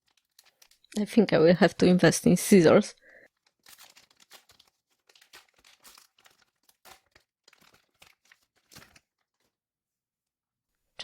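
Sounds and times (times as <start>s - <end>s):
foil wrapper crinkling and tearing: 0.0s - 0.9s, 3.2s - 9.6s.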